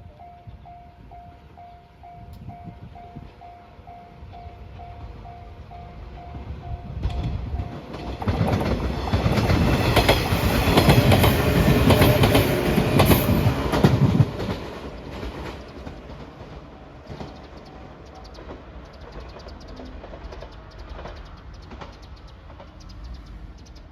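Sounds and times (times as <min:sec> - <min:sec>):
loud passing rush with clattering: 0:07.0 - 0:16.6.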